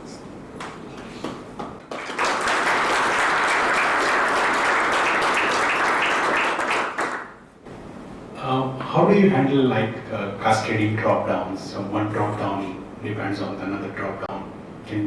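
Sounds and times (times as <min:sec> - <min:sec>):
audience applauding: 0:01.8 - 0:07.4.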